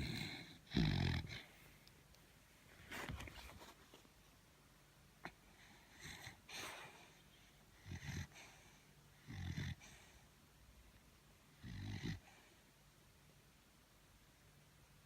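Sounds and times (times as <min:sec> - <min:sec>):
dog snoring: 0:00.0 - 0:01.5, 0:07.8 - 0:08.6, 0:09.2 - 0:10.1, 0:11.6 - 0:12.5.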